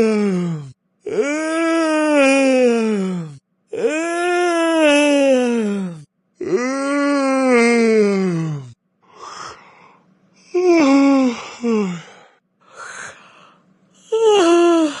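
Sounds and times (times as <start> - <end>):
person yawning with groans: 0.0 - 15.0
breathy in-breaths: 4.8 - 15.0.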